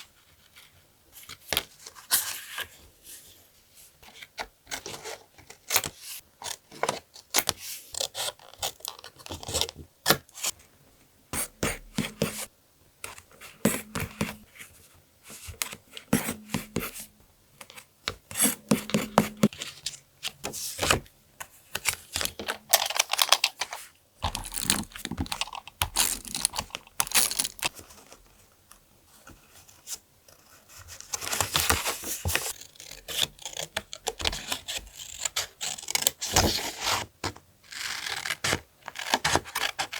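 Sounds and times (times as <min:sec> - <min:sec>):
paper rustling and tearing: 0:22.7 - 0:28.2.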